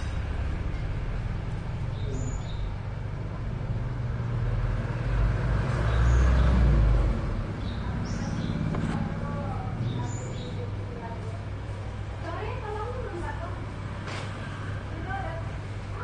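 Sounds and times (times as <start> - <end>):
low engine-like rumble: 0.0 - 16.0
bird chirps: 1.9 - 2.8, 9.8 - 10.6.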